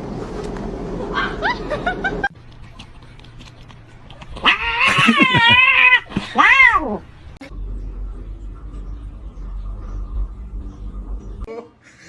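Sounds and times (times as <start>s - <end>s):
cat yowling: 4.4s - 7.0s.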